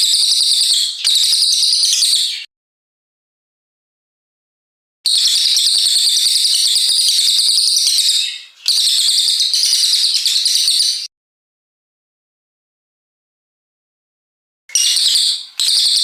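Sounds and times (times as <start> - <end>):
songbird shrill chattering song: 5.1 - 11.1, 14.7 - 16.0.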